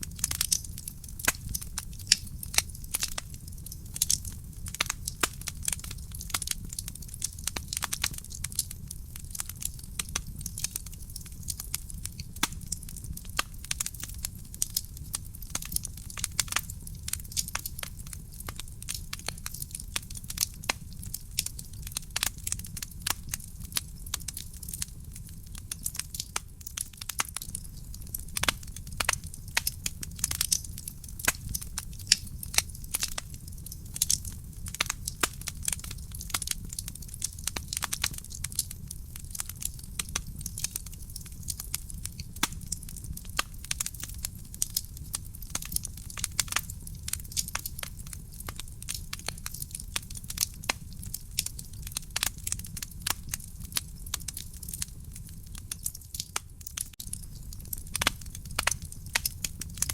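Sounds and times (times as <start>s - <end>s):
low rumble of flames: 0.0s - 59.9s
wood fire crackling and popping: 0.0s - 59.9s.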